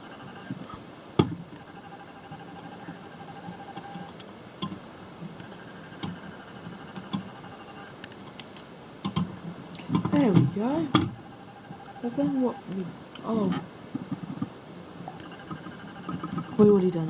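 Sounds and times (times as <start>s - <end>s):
faint steady background tones: 0.0s - 17.0s.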